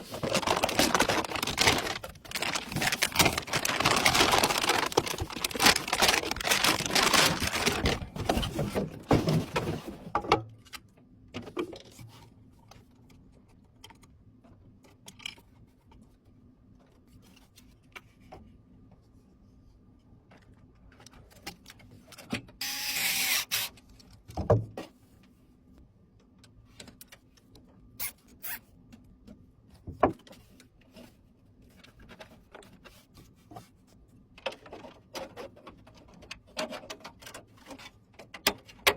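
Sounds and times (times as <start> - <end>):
packaging rustling: 0.0 - 9.8.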